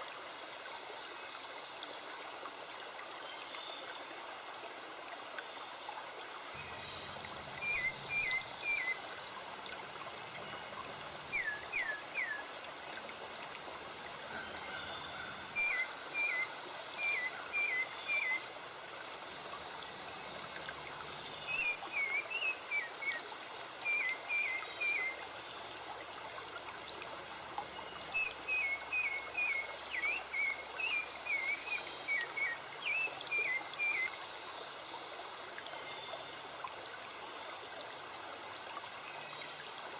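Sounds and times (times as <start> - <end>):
stream rushing: 4.0 - 35.8.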